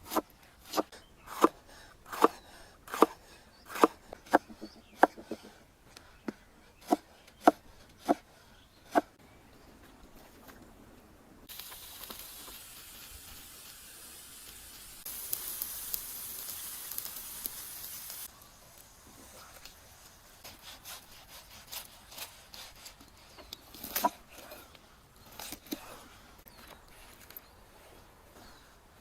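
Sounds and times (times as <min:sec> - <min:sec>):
meat sizzling in a hot pan: 0:11.5 - 0:19.1.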